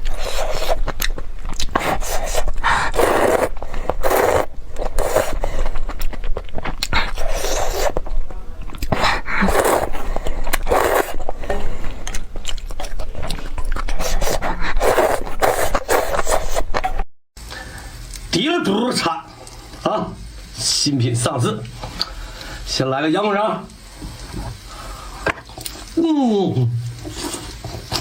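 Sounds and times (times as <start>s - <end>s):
person biting and chewing food: 0.0s - 17.1s.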